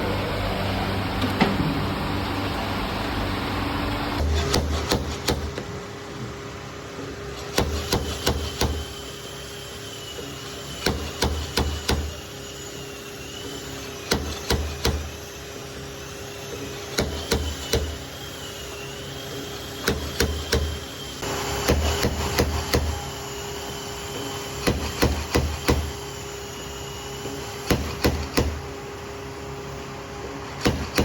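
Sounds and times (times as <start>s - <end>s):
steady machine hum: 0.0s - 31.0s.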